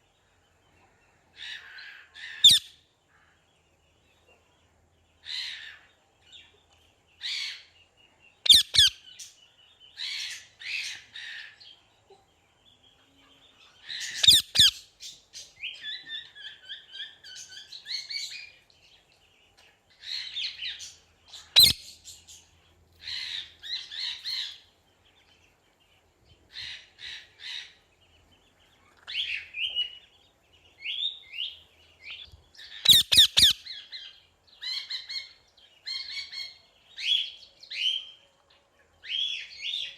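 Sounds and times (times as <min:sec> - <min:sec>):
loud sharp parrot squawks: 0:01.4 - 0:02.8, 0:08.5 - 0:09.0, 0:14.0 - 0:14.8, 0:21.6 - 0:21.9, 0:32.7 - 0:33.8
parrot calling: 0:08.5 - 0:09.1, 0:14.0 - 0:14.9, 0:21.5 - 0:21.9, 0:32.7 - 0:33.9.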